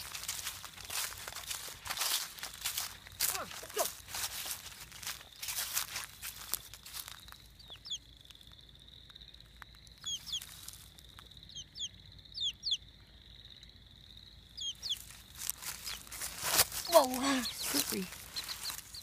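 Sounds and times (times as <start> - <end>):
chick peeping: 7.6 - 8.1, 10.0 - 10.6, 11.5 - 12.9, 14.6 - 16.1, 16.7 - 19.0.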